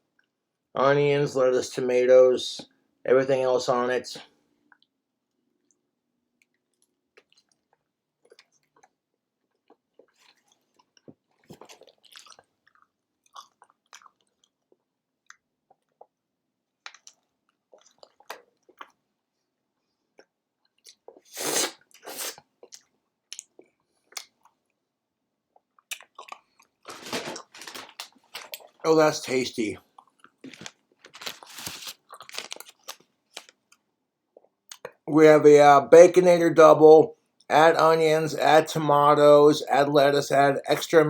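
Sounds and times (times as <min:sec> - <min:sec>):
chewing with wet mouth clicks: 0:06.4 - 0:16.2, 0:16.8 - 0:19.0, 0:22.0 - 0:24.6, 0:25.5 - 0:26.7.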